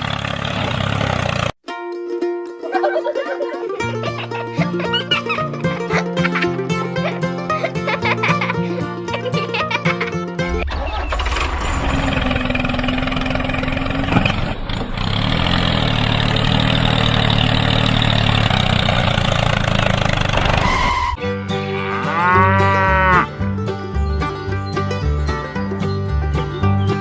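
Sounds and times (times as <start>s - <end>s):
steady loud noise: 10.5s - 21.2s
cow mooing: 21.3s - 23.4s.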